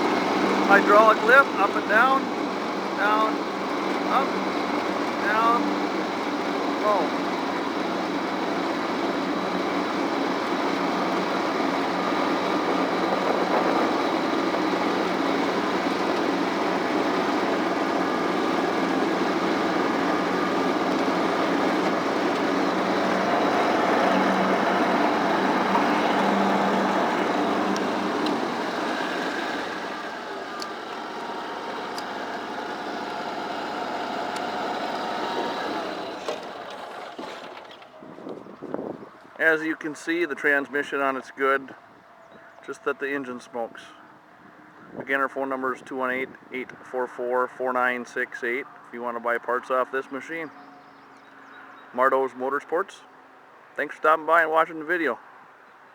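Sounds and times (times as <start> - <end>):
lawn tractor engine running: 0.0 - 41.4.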